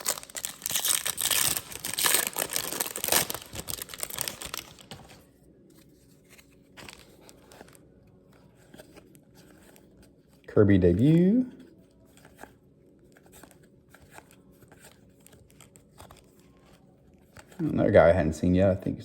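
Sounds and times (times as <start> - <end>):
foil pack tearing and crinkling: 0.0 - 5.2
cards rustling and clicking: 0.0 - 10.5, 11.9 - 17.7.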